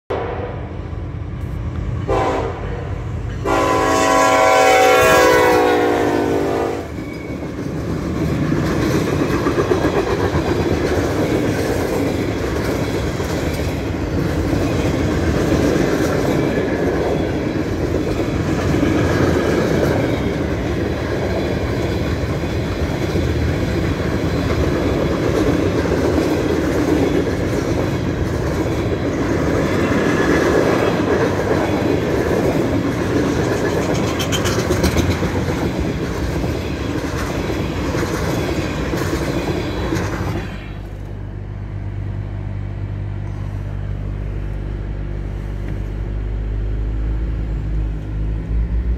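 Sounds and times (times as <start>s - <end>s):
train horn: 0.1s - 0.9s, 2.0s - 7.0s
train wheels rumbling on rails: 0.1s - 48.9s.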